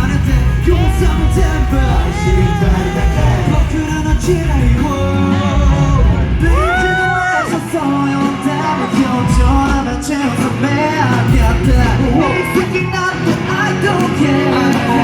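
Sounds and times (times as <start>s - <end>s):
heavy bass beat: 0.0s - 15.0s
male group vocals: 0.0s - 15.0s.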